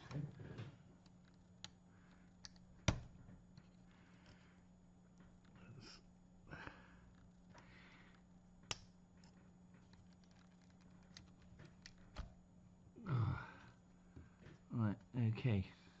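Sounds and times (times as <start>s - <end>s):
small parts clicking and tapping: 0.0s - 6.0s, 7.0s - 12.4s.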